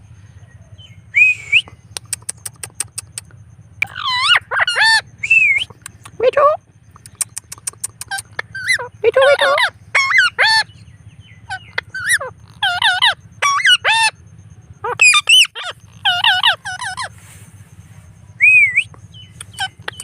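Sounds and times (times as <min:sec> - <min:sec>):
parrot chattering calls: 0:01.9 - 0:10.8, 0:11.4 - 0:14.2, 0:14.8 - 0:17.2, 0:18.4 - 0:20.0
parrot rising whistle: 0:18.4 - 0:18.9.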